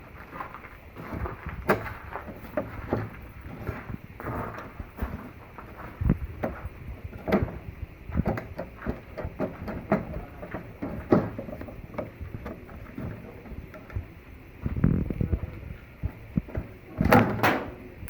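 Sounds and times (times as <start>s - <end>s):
machine knocks and clunks: 6.0s - 14.9s, 16.0s - 17.8s.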